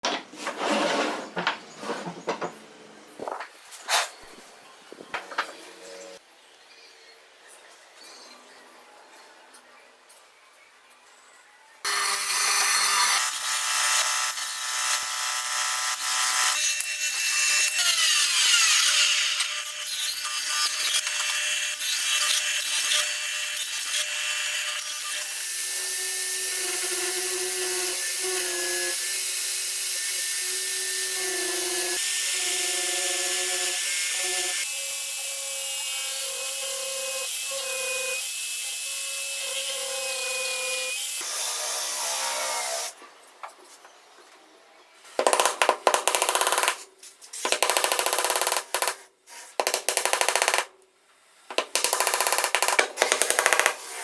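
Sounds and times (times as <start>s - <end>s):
power tool cutting wood: 11.9s - 43.0s.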